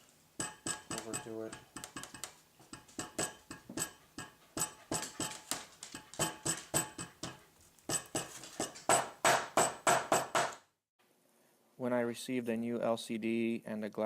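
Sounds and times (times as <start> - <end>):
sharp metallic taps: 0.4 - 10.6.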